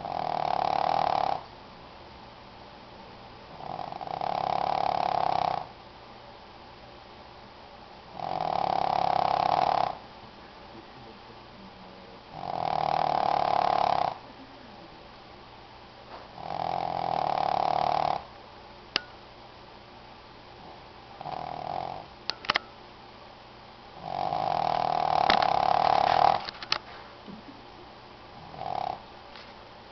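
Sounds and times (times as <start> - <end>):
dog snoring loudly: 0.0 - 1.5, 3.5 - 5.8, 8.1 - 10.0, 12.3 - 14.2, 16.3 - 18.3, 20.6 - 22.1, 24.0 - 26.5, 28.4 - 29.1
sharp click: 18.9 - 19.1, 22.3 - 22.7.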